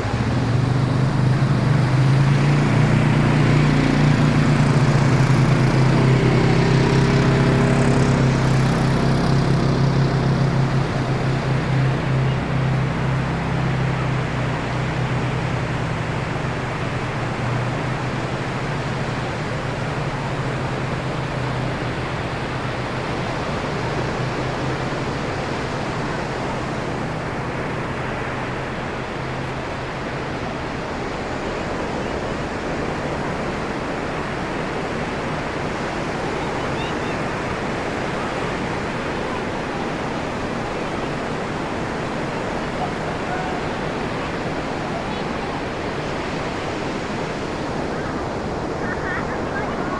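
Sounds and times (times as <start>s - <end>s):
ocean surf breaking: 0.0s - 49.9s.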